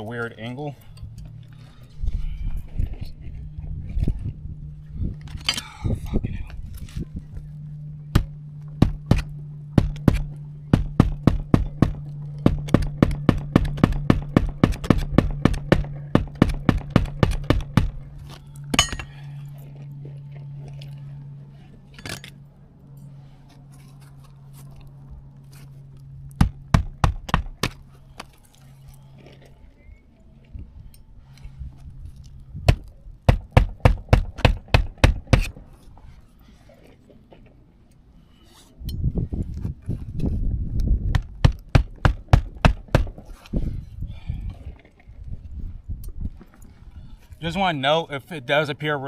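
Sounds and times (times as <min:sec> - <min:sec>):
steady low hum: 0:00.0 - 0:49.0
nails driven into roof shingles: 0:08.2 - 0:18.0, 0:32.7 - 0:35.6, 0:41.1 - 0:43.3.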